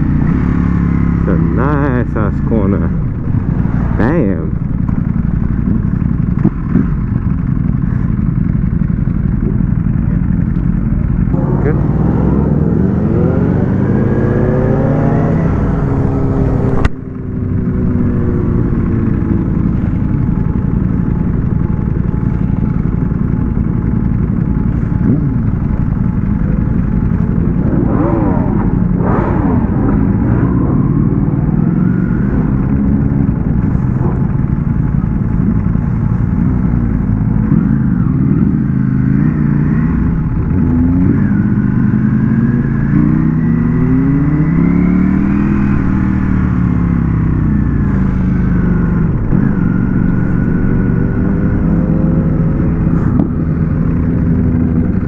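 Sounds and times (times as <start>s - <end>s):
motorcycle engine accelerating: 0.0s - 55.0s
wind noise: 24.9s - 36.4s.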